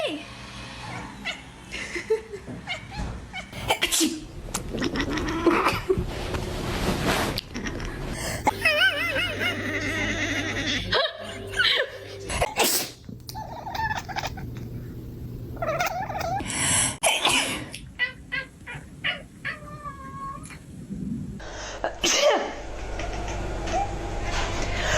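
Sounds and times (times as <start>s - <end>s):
person sneezing: 12.5s - 13.0s
cats warbling calls: 13.2s - 14.8s, 15.6s - 16.4s, 18.0s - 20.6s.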